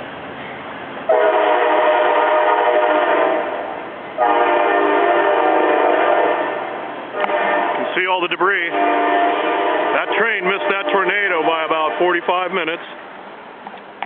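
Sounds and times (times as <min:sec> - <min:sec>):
train horn blasts: 0:01.1 - 0:12.5.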